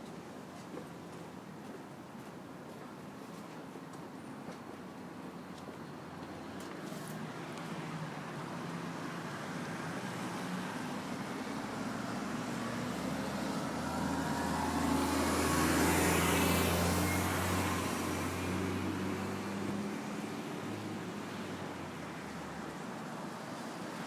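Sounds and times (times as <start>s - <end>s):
vehicle passing by: 6.9s - 22.8s.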